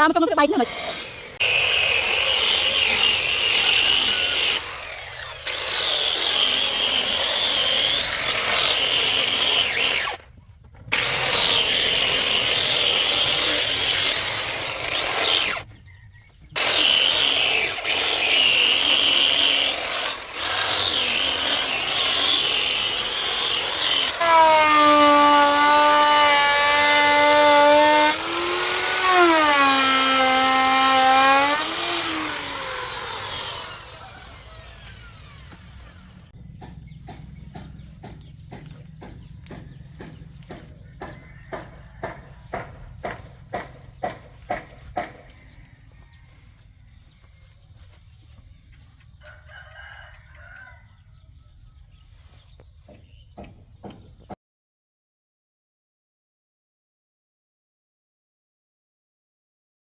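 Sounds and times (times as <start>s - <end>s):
power tool sanding wood: 0.0s - 10.2s, 10.9s - 15.7s, 16.6s - 45.6s
motor whine: 31.6s - 36.4s.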